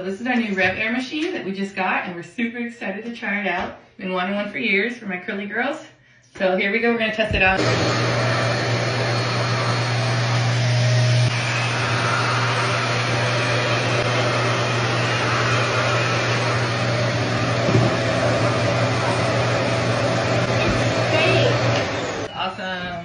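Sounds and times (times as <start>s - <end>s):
blow dryer humming with rushing air: 7.3s - 22.3s.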